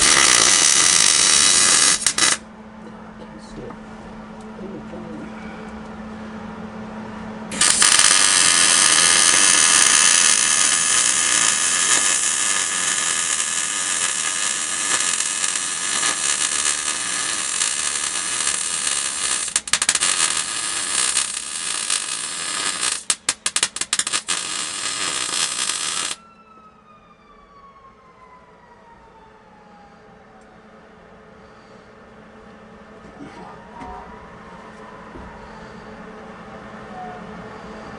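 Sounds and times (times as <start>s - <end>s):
electric grinder running: 0.0s - 2.4s, 7.5s - 26.2s.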